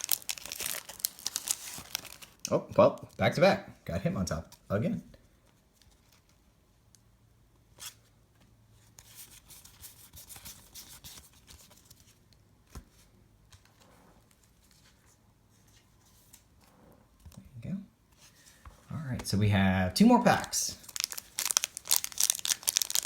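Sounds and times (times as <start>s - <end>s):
trading cards rustling: 0.0s - 2.4s, 20.3s - 23.0s.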